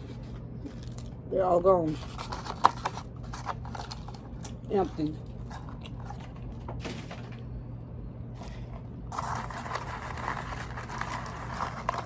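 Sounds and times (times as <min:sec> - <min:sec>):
steady low hum: 0:00.0 - 0:12.0
paper packaging rustling: 0:01.8 - 0:07.3, 0:08.4 - 0:12.0.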